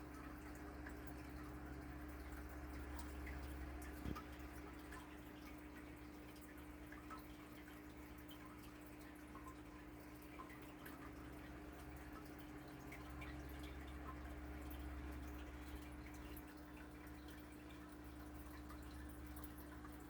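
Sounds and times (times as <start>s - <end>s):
faint electrical hum: 0.0s - 20.0s.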